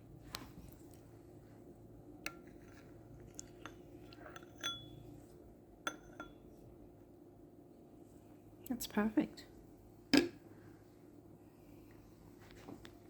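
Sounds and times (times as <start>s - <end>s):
kitchenware clinking: 3.3s - 5.2s, 5.9s - 6.4s.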